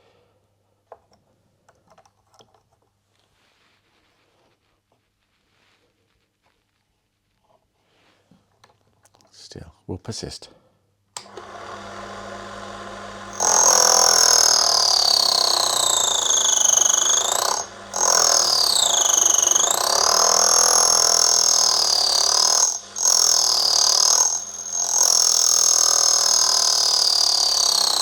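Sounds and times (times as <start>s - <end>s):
lathe motor running: 11.2s - 28.0s
cutting tool screeching on metal: 13.3s - 28.0s.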